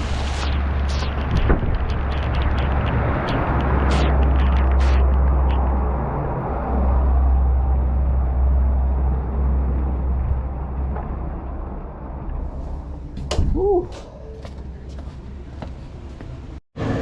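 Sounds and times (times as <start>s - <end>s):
heavy rain hissing: 0.0s - 8.5s
deep rumble: 0.0s - 15.5s.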